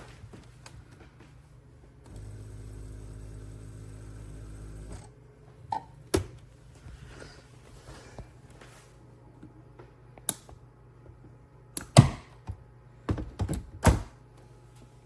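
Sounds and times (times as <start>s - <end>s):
coffee maker motor humming: 2.0s - 5.2s.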